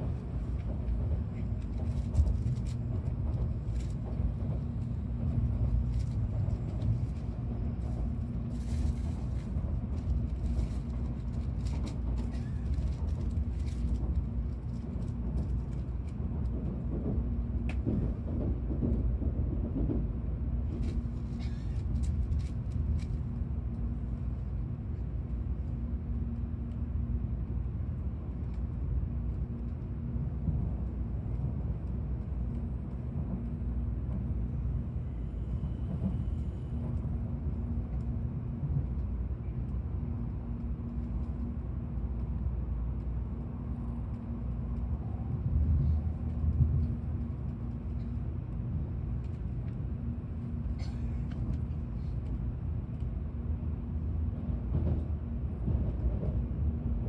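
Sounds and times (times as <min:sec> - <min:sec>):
constant low hum: 0:00.0 - 0:57.0
train running interior rumble: 0:00.0 - 0:57.0.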